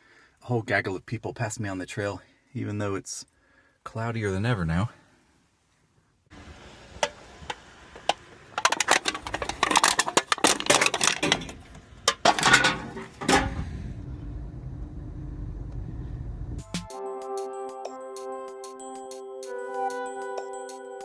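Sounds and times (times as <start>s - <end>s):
low steady rumble: 6.4s - 16.7s.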